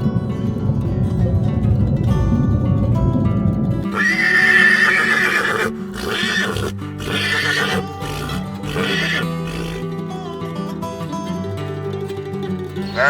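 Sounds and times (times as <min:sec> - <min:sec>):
animal calling: 0:03.9 - 0:09.8.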